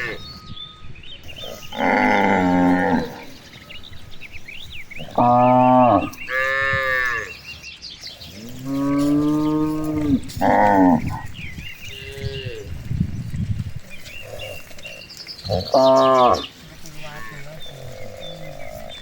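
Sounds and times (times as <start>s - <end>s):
cattle mooing: 0.0s - 0.3s, 1.3s - 3.4s, 5.0s - 7.4s, 8.4s - 12.9s, 14.2s - 16.5s.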